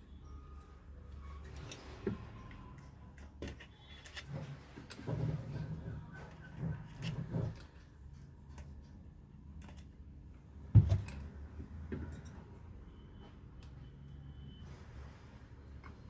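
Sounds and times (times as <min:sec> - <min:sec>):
light clicks and taps of tools: 0:07.0 - 0:12.6.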